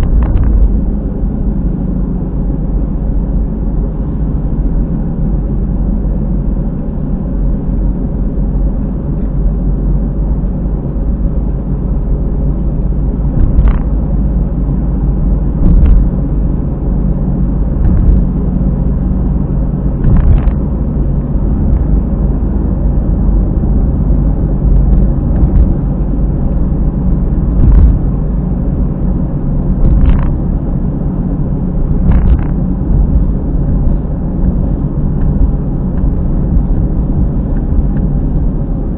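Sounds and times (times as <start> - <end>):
tyre and road rumble: 0.0 - 38.9
short thump from wheel: 13.4 - 13.9, 15.6 - 16.1, 17.8 - 18.3, 20.0 - 20.6, 27.6 - 28.0, 31.9 - 32.6.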